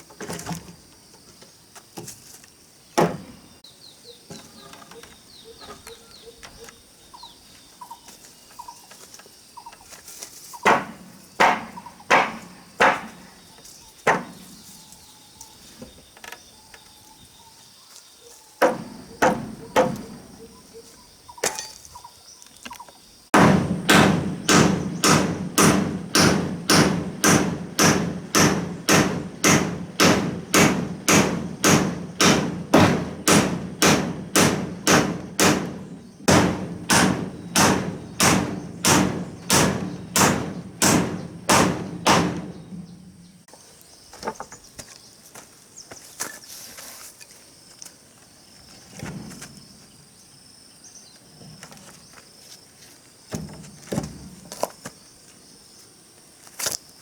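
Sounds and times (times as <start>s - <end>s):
tool striking wood: 10.6s - 13.2s, 14.1s - 14.4s, 18.6s - 20.3s, 23.4s - 43.0s.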